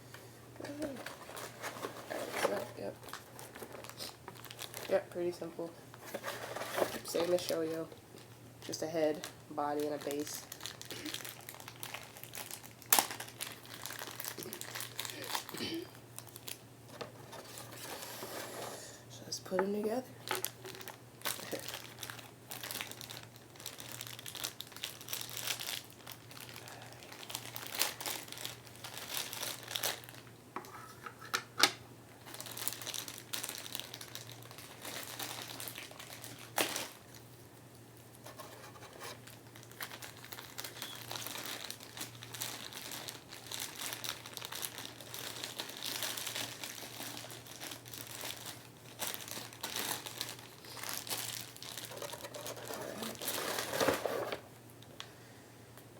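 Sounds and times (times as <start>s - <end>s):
packaging crinkling: 0.6s - 5.2s, 5.9s - 8.4s, 9.2s - 18.8s, 20.2s - 31.3s, 32.2s - 37.4s, 38.2s - 55.0s.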